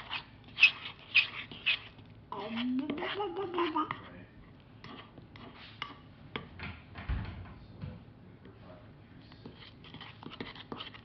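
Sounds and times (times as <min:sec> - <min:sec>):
slime mixing in a bowl: 0:00.0 - 0:06.5, 0:09.1 - 0:11.0.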